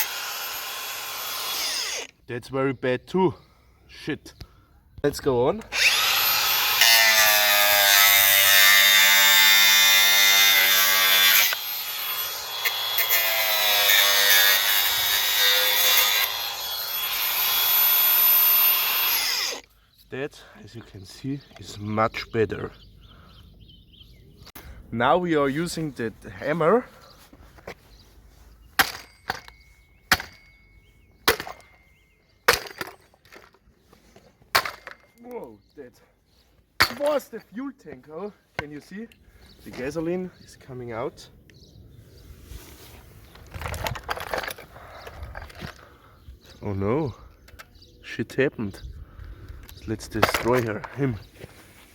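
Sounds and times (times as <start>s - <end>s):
power tool whining: 0.0s - 2.2s, 5.6s - 19.7s
hammer striking chainsaw body: 28.8s - 29.5s, 30.1s - 30.5s, 31.2s - 31.8s, 32.5s - 33.5s, 34.5s - 35.0s, 36.8s - 37.2s.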